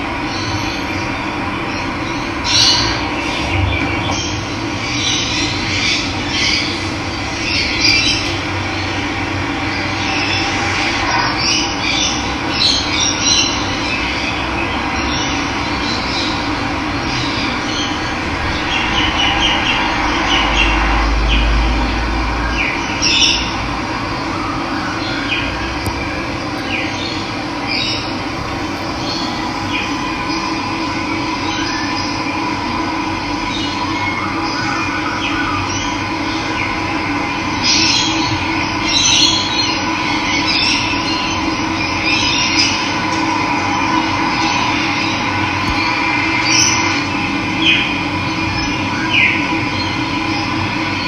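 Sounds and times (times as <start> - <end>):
birds chirping: 25.0 - 32.3
brief low rumble: 25.9 - 31.9
water rushing: 26.4 - 32.2.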